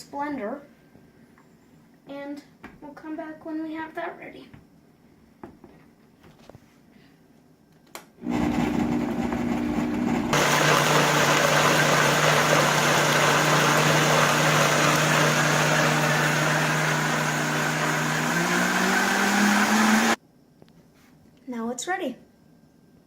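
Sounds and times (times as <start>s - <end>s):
blender motor running: 8.2s - 20.2s.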